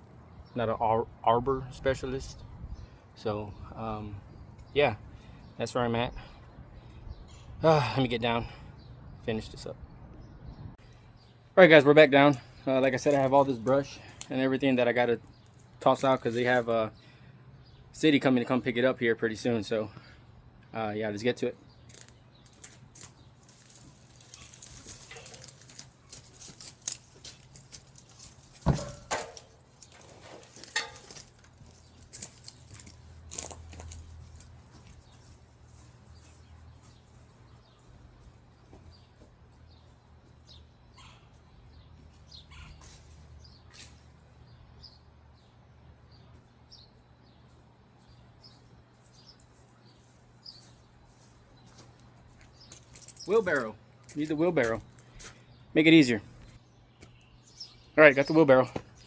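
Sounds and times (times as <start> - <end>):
branches rustling and crackling: 12.2 - 16.8, 21.7 - 39.2, 47.4 - 55.6.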